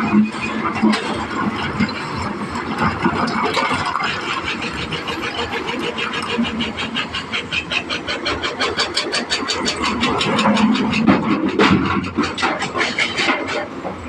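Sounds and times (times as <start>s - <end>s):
excavator diesel engine clattering: 0.0s - 14.0s.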